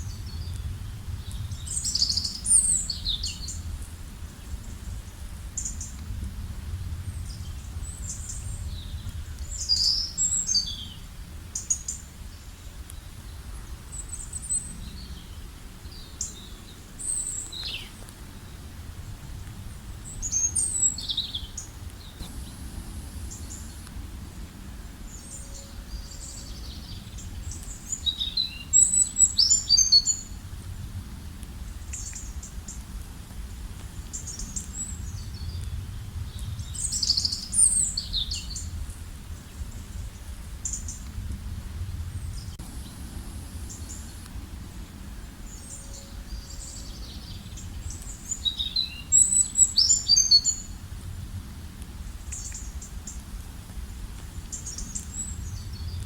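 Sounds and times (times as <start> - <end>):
low background rumble: 0.0 - 49.7
songbirds chirping and singing: 7.2 - 18.7, 24.8 - 30.4.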